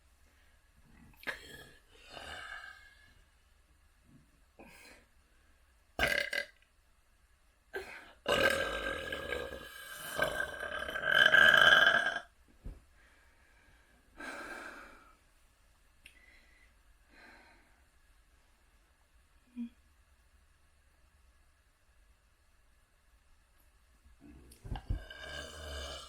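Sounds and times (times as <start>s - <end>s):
person burping: 1.2s - 2.5s, 6.0s - 6.6s, 8.2s - 12.3s, 24.8s - 26.0s.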